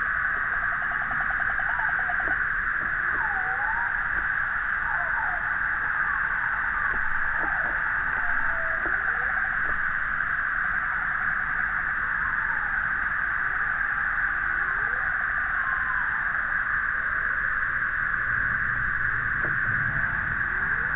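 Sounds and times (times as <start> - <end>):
doves cooing: 0.0 - 10.0, 18.2 - 20.9
steady high hiss: 0.0 - 20.9.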